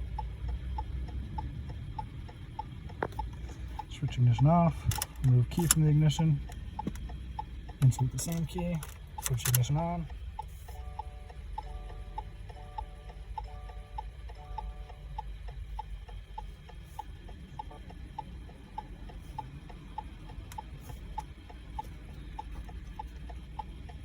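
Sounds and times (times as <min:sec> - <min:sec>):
hazard light flasher clicking: 0:04.8 - 0:10.2.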